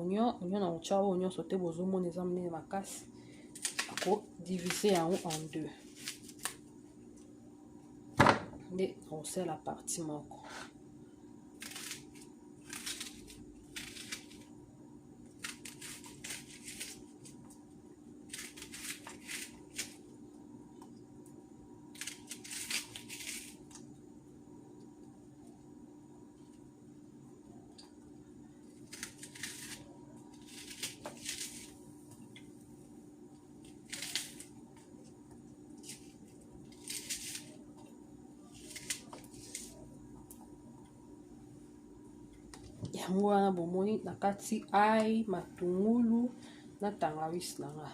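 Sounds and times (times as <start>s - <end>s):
faint steady hum: 0.0s - 47.9s
onion being cut by hand: 3.6s - 6.6s, 11.6s - 14.5s, 15.3s - 17.4s, 18.2s - 20.0s, 21.9s - 23.8s, 28.7s - 31.8s, 33.6s - 34.6s, 35.8s - 37.6s, 38.5s - 39.8s
knife cutting through onion: 11.6s - 14.4s, 15.4s - 17.3s, 18.3s - 20.0s.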